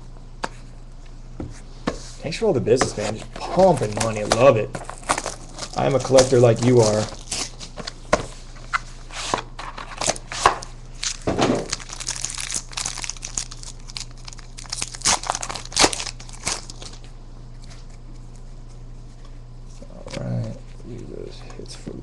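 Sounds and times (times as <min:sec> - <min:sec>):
cards and packaging handled: 0:02.8 - 0:18.5
wrapper crinkling and tearing: 0:03.4 - 0:07.8, 0:09.6 - 0:17.1.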